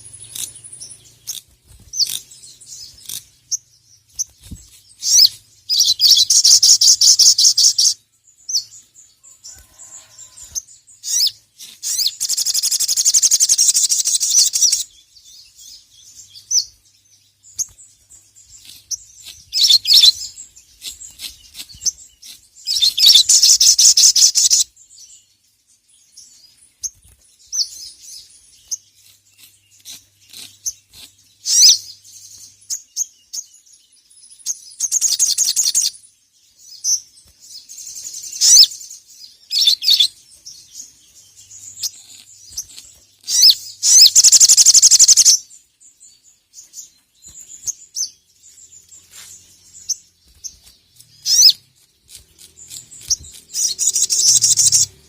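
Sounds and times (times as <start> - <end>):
bird high-pitched trills: 0.0 - 15.0, 18.5 - 24.7, 39.5 - 45.5, 49.1 - 55.0
bird sharp chirps: 0.0 - 25.3, 26.0 - 55.0.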